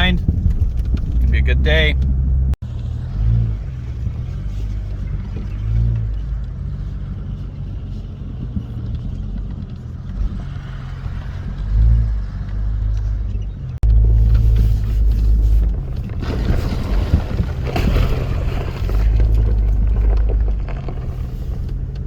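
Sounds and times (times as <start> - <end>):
off-road vehicle engine droning: 0.0 - 22.0.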